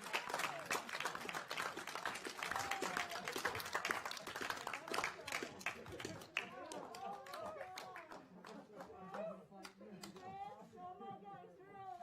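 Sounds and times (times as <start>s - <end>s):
crowd applauding: 0.0s - 9.3s
excited voices and cheers: 2.3s - 3.9s.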